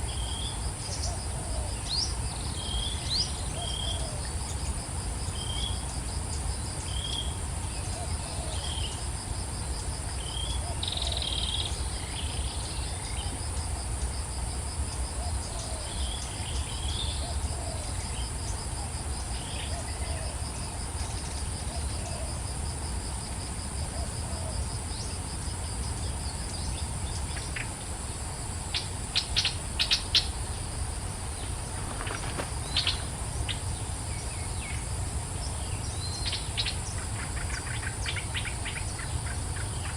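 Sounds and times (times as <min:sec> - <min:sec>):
insects buzzing high-pitched: 0:00.0 - 0:39.9
pulsing insect trill: 0:00.0 - 0:39.9
low background rumble: 0:20.2 - 0:39.9
bird chirping: 0:31.3 - 0:33.6.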